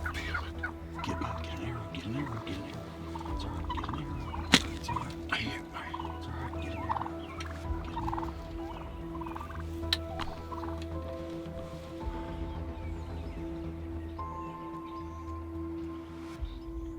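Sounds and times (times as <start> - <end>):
turkeys gobbling and calling: 0.0 - 12.0.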